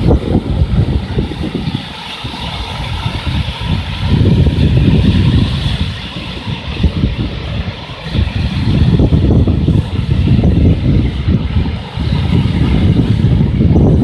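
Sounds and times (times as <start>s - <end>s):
wind gusting across microphone: 0.0s - 14.0s.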